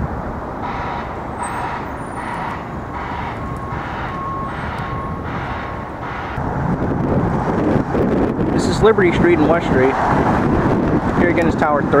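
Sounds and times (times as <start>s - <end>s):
city traffic rumble: 0.0s - 12.0s
vehicle reversing alarm beeping: 0.6s - 6.4s.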